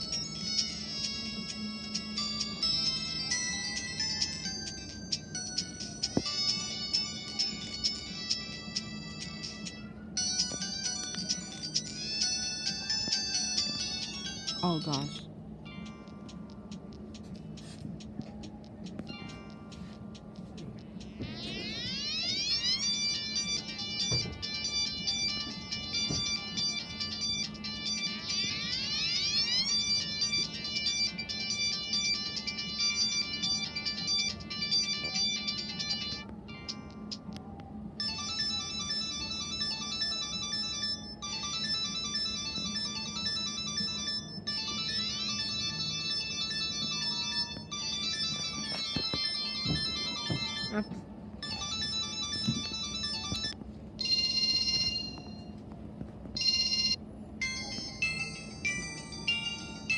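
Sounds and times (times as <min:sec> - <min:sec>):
electronic ringtone melody: 0:00.0 - 0:55.6, 0:56.4 - 0:59.9
bright chiming tone: 0:38.0 - 0:55.6, 0:56.4 - 0:59.9.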